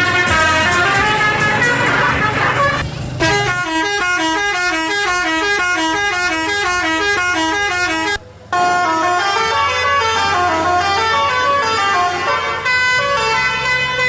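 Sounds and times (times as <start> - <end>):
multi-tone horn melody: 0.0 - 14.0.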